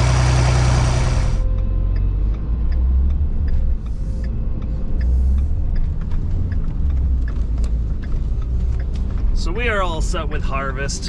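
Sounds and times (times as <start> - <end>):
vehicle engine rumbling: 0.0 - 11.0
faint light ticks: 1.5 - 9.7.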